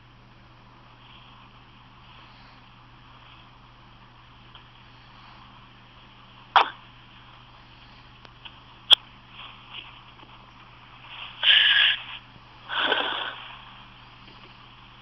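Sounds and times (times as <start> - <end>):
person hiccuping: 6.6 - 6.8.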